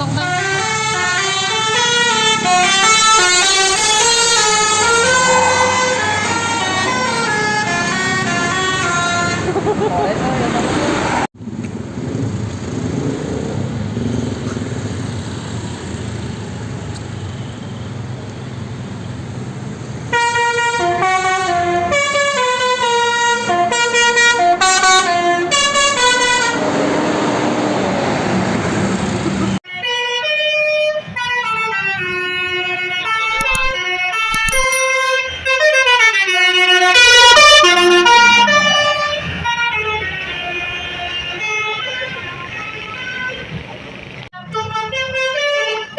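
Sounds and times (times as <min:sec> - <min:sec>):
bus air horns playing tunes: 0:00.0 - 0:11.2, 0:20.1 - 0:27.6, 0:29.1 - 0:43.6, 0:44.4 - 0:45.9.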